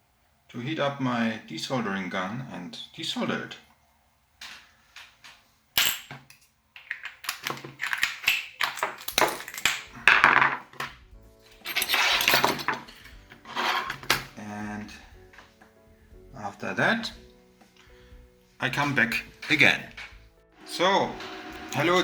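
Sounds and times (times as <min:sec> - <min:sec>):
background music: 0:00.6 - 0:03.7, 0:09.0 - 0:22.0
hard objects clattering: 0:04.4 - 0:14.4.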